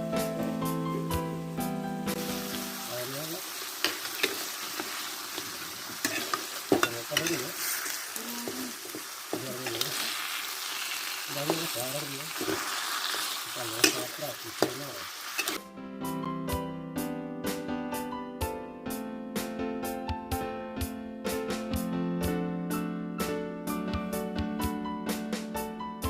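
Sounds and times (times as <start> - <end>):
meat sizzling on a grill: 0.2 - 15.6.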